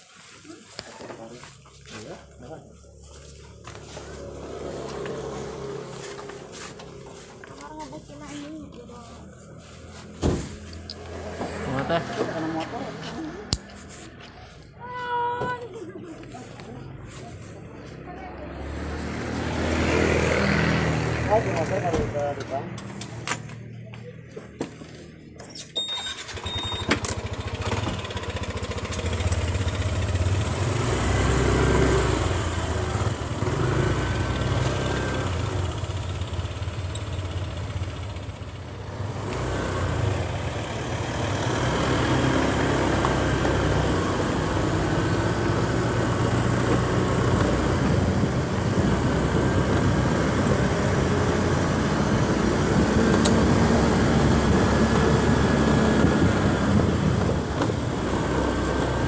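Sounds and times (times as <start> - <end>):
low road rumble: 0.0 - 59.0
vehicle engine running: 0.2 - 25.3, 26.2 - 59.0
wind noise: 51.9 - 58.1.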